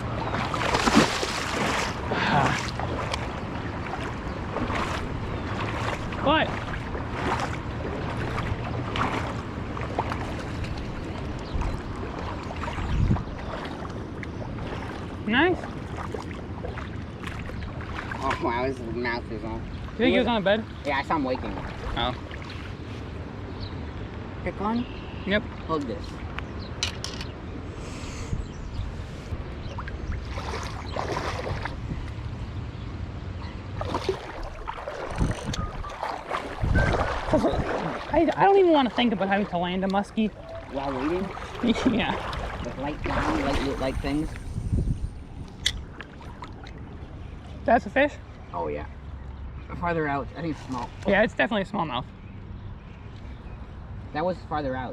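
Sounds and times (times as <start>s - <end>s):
water splashes: 0.0s - 23.4s, 29.3s - 32.4s, 33.4s - 52.2s
river water sloshing: 0.0s - 24.4s, 28.6s - 54.1s
wind buffeting microphone: 0.0s - 24.4s, 25.9s - 49.8s
river current rushing: 33.8s - 46.7s.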